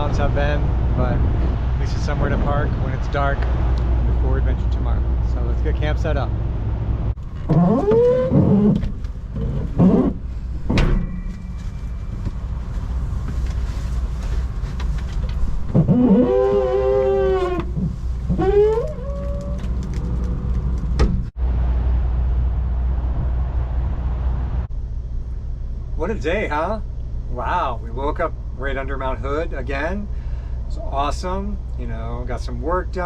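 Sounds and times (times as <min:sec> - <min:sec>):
vehicle engines idling: 0:00.0 - 0:33.0
wavering pitched squeals: 0:07.2 - 0:10.5, 0:15.8 - 0:19.7.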